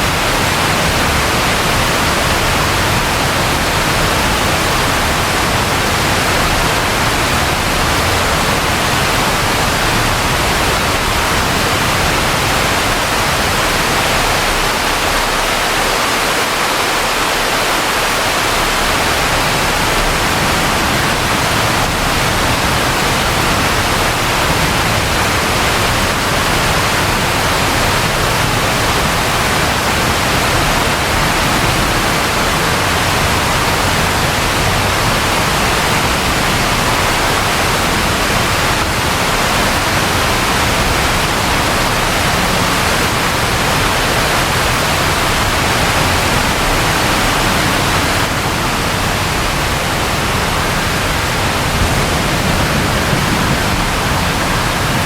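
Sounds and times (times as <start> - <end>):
steady rainfall: 0.0 - 55.0.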